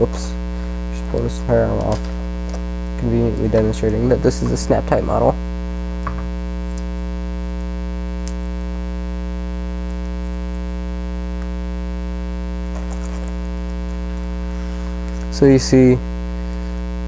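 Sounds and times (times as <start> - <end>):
electrical mains hum: 0.0 - 17.0
handling rustle: 0.1 - 5.4, 12.5 - 15.6.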